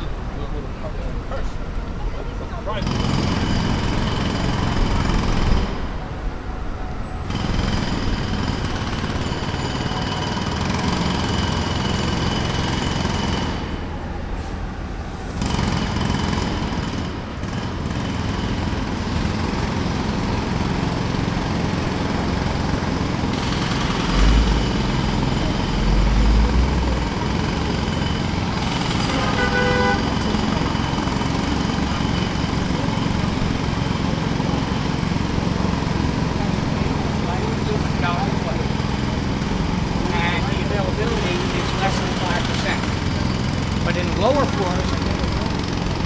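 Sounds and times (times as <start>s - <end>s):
jackhammer hammering: 2.8s - 6.0s, 7.3s - 14.1s, 15.4s - 46.0s.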